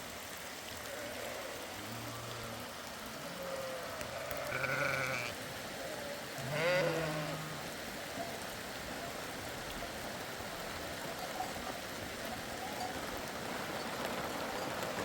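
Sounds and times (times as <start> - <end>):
rain hissing: 0.0 - 15.0
sheep bleating: 3.2 - 5.4, 6.4 - 7.6.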